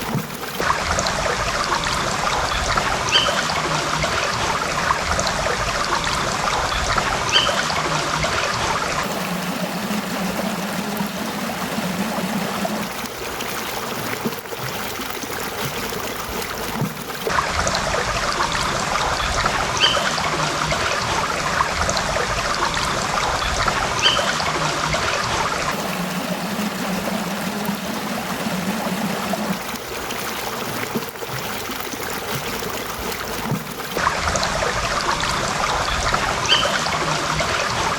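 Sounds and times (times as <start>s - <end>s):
stream water babbling: 0.0s - 37.9s.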